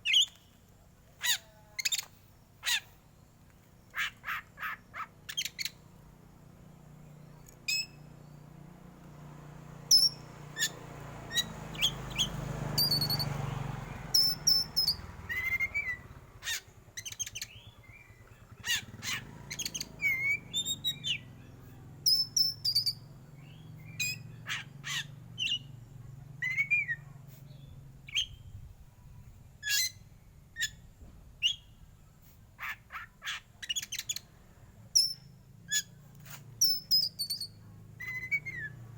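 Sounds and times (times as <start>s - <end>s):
bird singing chips and whistles: 0.0s - 0.6s, 7.6s - 8.0s, 9.9s - 13.3s, 14.2s - 21.3s, 22.1s - 23.0s, 33.6s - 34.3s, 35.0s - 35.9s, 36.6s - 38.8s.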